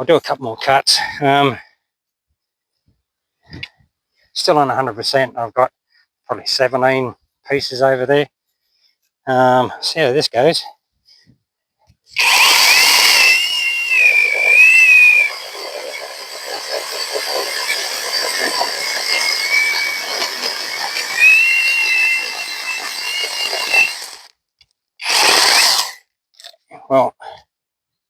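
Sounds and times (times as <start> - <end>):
electric chainsaw cutting log: 12.2 - 24.3, 25.0 - 26.0.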